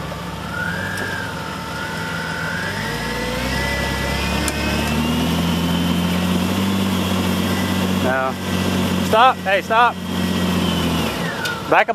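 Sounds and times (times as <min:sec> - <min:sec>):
off-road vehicle engine under load: 0:00.0 - 0:11.9
thin rising whine: 0:00.0 - 0:11.9.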